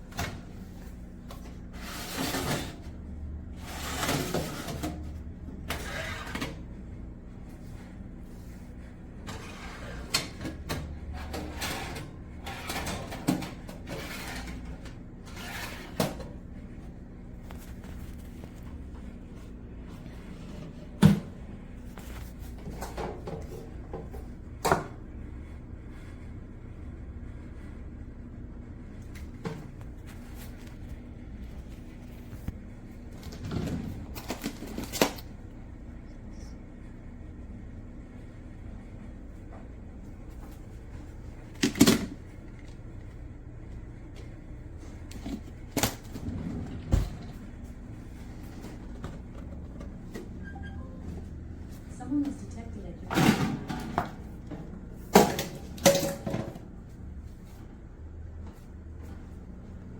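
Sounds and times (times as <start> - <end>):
steady low hum: 0.0 - 59.9
sliding and scraping: 11.1 - 16.2.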